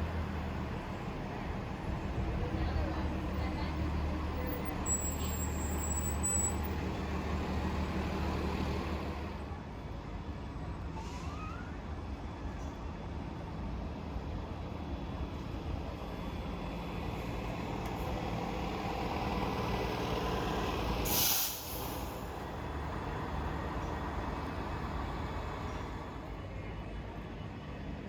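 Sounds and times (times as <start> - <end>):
bus engine running: 0.0 - 10.9, 11.9 - 28.0
air brakes hissing: 21.0 - 22.3.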